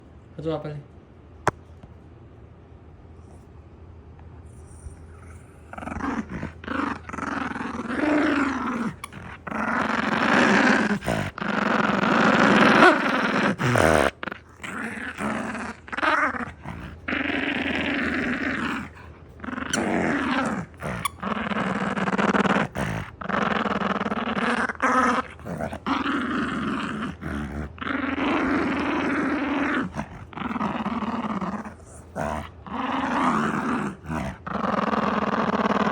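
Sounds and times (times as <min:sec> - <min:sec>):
dog growling: 0:04.5 - 0:35.9.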